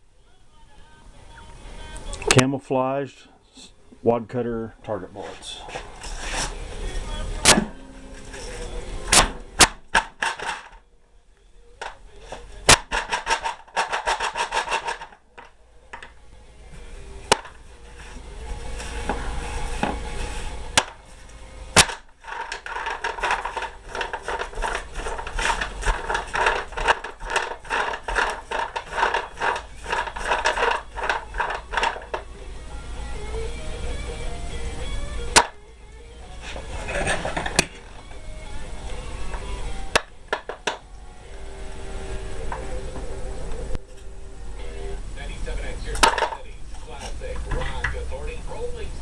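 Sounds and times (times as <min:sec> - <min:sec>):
bullets clicking and rattling: 0:12.7 - 0:16.2, 0:21.8 - 0:32.3.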